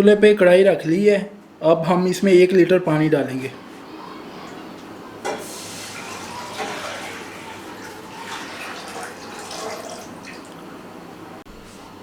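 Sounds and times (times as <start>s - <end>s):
water pouring into a pan: 5.3s - 10.6s.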